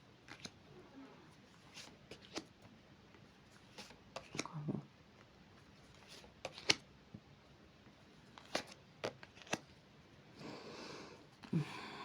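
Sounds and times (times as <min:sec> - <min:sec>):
cards sliding and rustling: 0:03.6 - 0:04.4, 0:05.9 - 0:06.8, 0:08.4 - 0:09.6
cards slapping: 0:06.4 - 0:06.8, 0:08.4 - 0:09.6.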